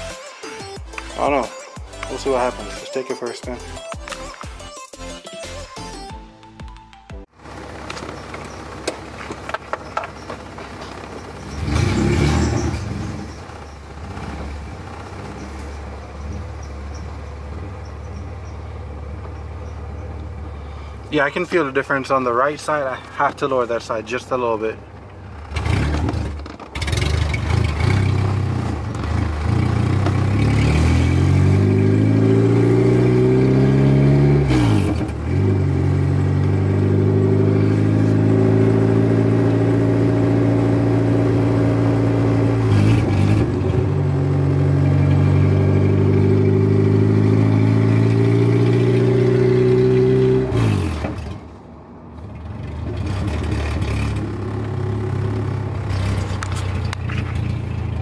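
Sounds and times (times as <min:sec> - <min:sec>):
car engine revving through gears: 0:07.5 - 0:20.7, 0:25.2 - 0:51.6, 0:52.2 - 0:58.0.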